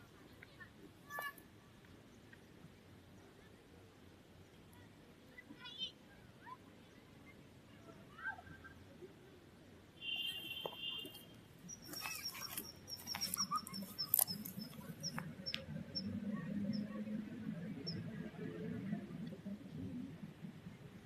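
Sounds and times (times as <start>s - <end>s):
small bird chirping: 11.6s - 16.9s
clicks and crackles: 11.9s - 15.7s.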